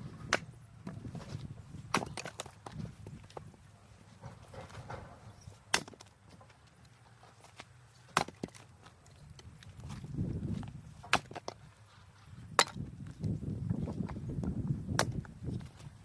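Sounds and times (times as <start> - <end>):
axe chopping firewood: 0.2 - 1.0, 1.8 - 3.4, 5.6 - 6.4, 7.4 - 8.7, 9.8 - 11.7, 12.5 - 13.3, 13.9 - 15.9
wood knocking and clattering: 4.2 - 5.2.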